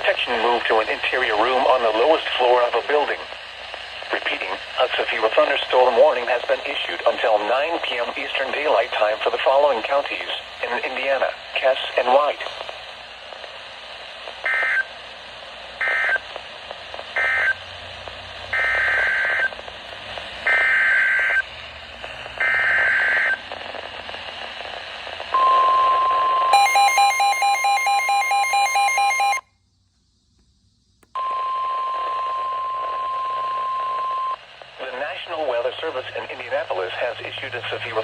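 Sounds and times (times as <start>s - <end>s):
steady warning alarm tone: 25.4s - 29.5s.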